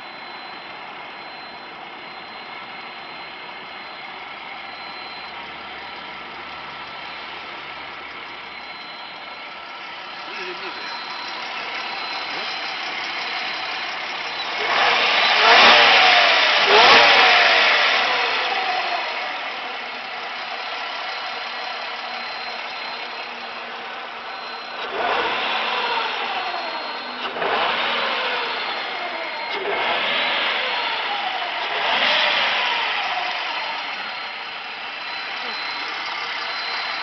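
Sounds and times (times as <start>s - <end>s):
high-pitched whine: 0.0s - 16.3s, 33.0s - 37.0s
car engine idling and revving: 0.0s - 37.0s.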